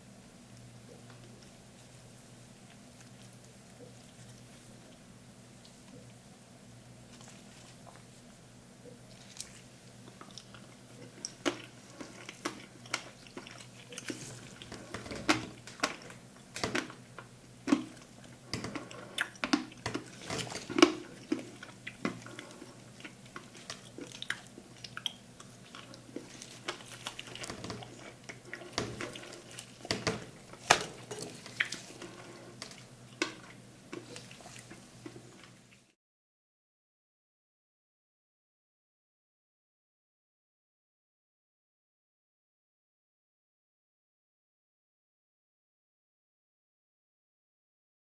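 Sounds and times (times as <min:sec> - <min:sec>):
low steady hum: 0:00.0 - 0:35.9.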